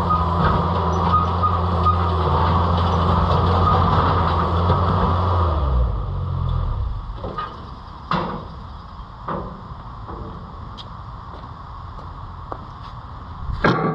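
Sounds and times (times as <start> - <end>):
skid steer engine running: 0.0 - 10.8.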